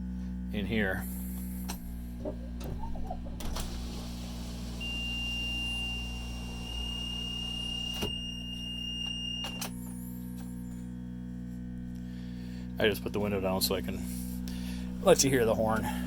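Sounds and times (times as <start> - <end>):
air compressor humming: 0.0 - 8.8, 9.7 - 16.0
power window whirring: 1.2 - 10.1.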